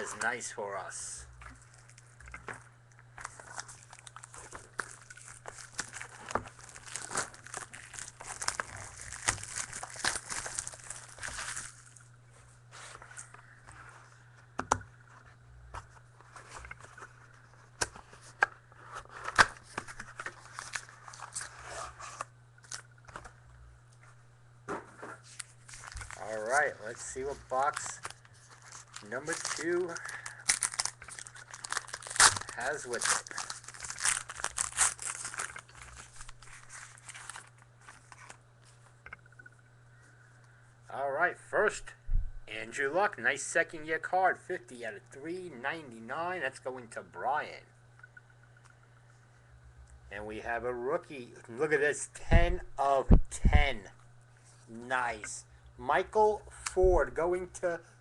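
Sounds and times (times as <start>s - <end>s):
low steady hum: 0.0s - 58.0s
wrapping rustling and crinkling: 1.4s - 14.4s, 15.0s - 23.4s, 25.2s - 39.5s.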